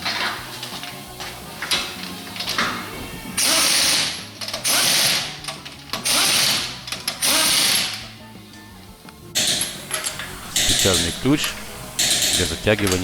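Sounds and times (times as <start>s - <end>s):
impact wrench rattling: 3.4s - 8.0s, 9.4s - 13.0s.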